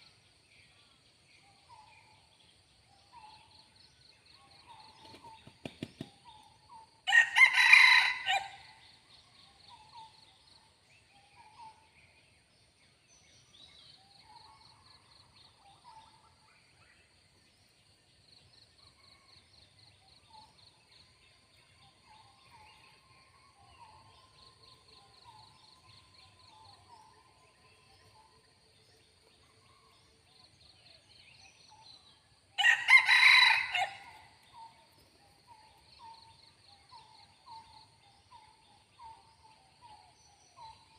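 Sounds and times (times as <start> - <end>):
rooster crowing: 7.1 - 8.7, 32.6 - 34.2.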